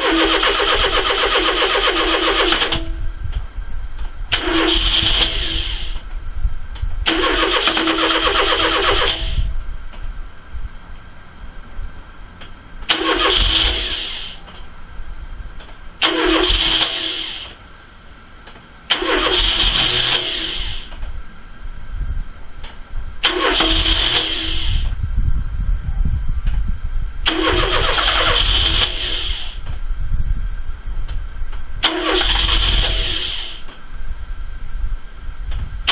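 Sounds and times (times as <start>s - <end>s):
car starter cranking: 0.0s - 3.0s, 4.3s - 6.0s, 7.0s - 9.5s, 12.8s - 14.7s, 15.6s - 17.6s, 18.4s - 21.1s, 22.7s - 25.0s, 27.2s - 29.7s, 31.8s - 33.7s
low engine rumble: 0.0s - 35.9s.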